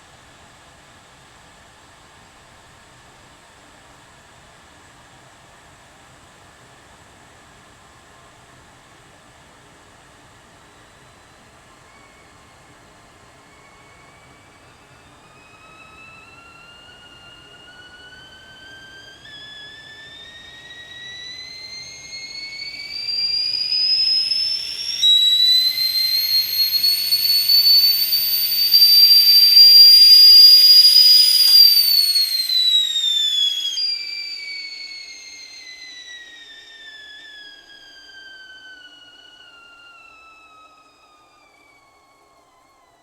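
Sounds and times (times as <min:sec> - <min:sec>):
kettle whistling: 0:09.6 - 0:43.0.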